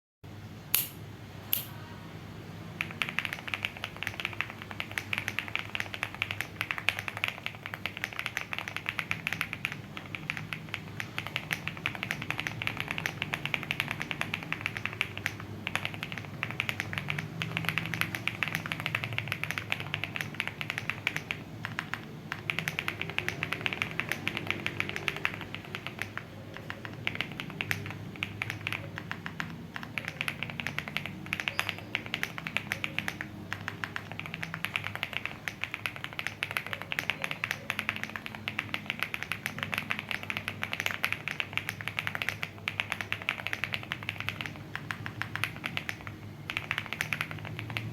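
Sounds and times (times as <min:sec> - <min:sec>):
keyboard typing: 0:02.6 - 0:47.9.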